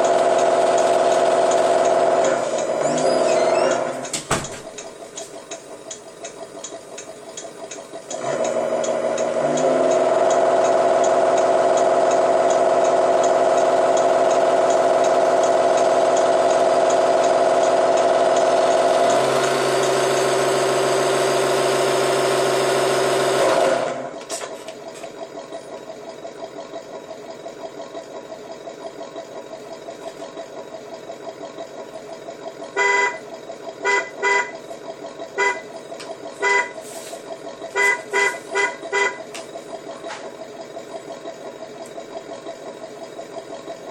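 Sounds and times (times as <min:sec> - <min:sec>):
vehicle horn long steady tone: 0:32.7 - 0:34.6, 0:35.3 - 0:35.7, 0:36.4 - 0:36.9, 0:37.7 - 0:39.3
short horn toots: 0:37.8 - 0:39.2.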